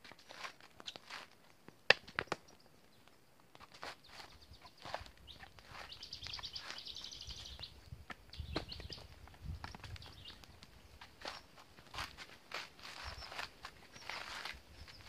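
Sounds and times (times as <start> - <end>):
bird chirping trill: 4.0 - 9.1, 10.0 - 11.5.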